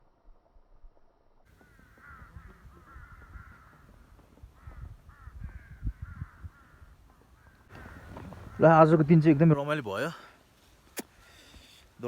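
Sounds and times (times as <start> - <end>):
crows cawing: 1.5 - 9.5.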